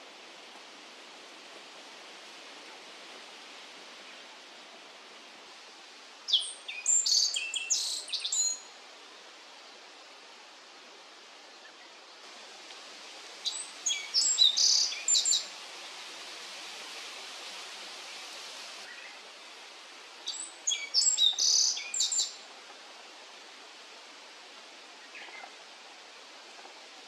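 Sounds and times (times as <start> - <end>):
steady hiss: 0.0 - 27.0
bird chirping song: 6.3 - 8.6, 13.4 - 15.4, 20.3 - 22.3.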